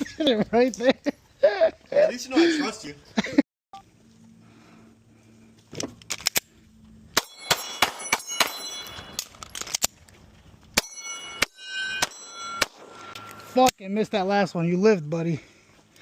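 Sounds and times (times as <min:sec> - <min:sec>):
steel targets ringing: 0:07.2 - 0:09.3, 0:10.8 - 0:14.4.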